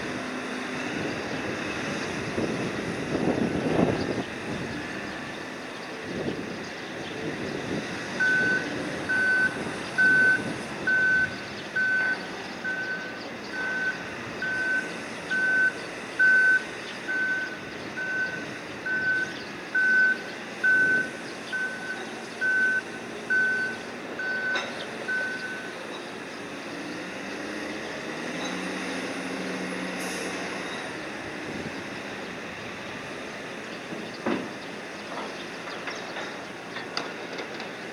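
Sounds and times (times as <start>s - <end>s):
cargo machinery rumble: 0.0s - 37.9s
warning alarm beeping: 8.2s - 25.7s.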